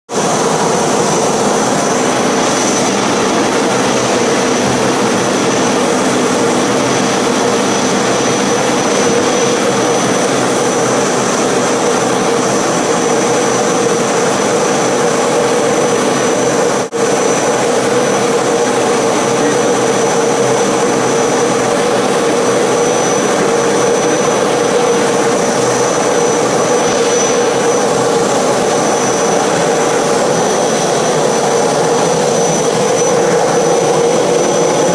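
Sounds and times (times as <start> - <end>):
high-pitched engine whine: 0.1 - 34.9
jet engine running: 0.1 - 34.9.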